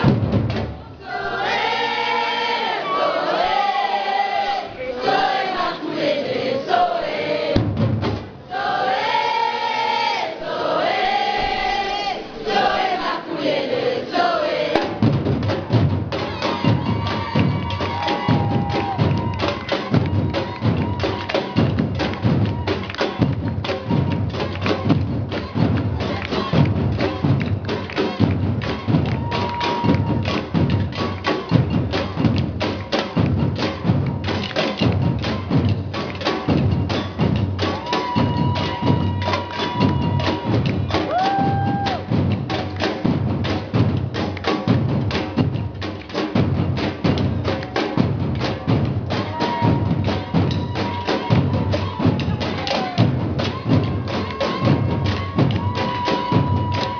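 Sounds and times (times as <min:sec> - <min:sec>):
drumming: 0:00.0 - 0:56.9
group singing: 0:00.8 - 0:07.8, 0:08.4 - 0:21.6.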